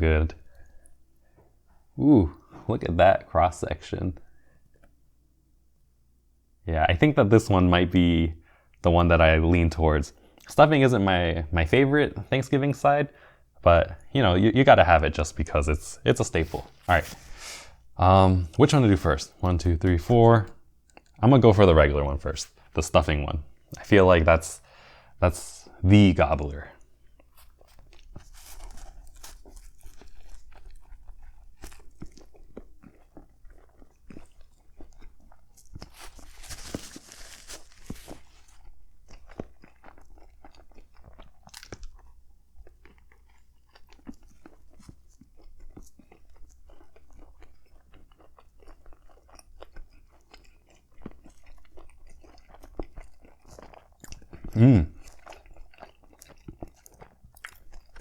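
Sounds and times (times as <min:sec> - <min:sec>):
crunchy bread roll chewing: 0:26.4 - 0:58.0.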